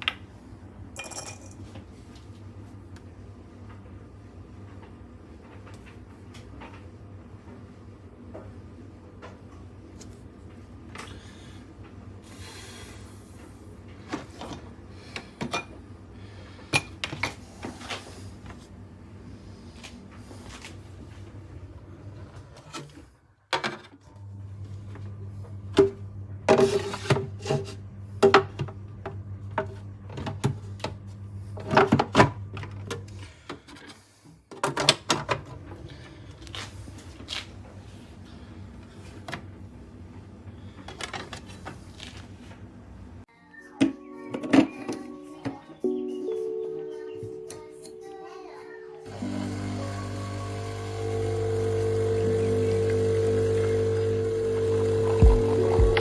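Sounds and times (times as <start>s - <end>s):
cups and machine parts clattering: 0.9s - 1.9s, 31.6s - 35.6s
louder steady low hum: 49.1s - 56.0s.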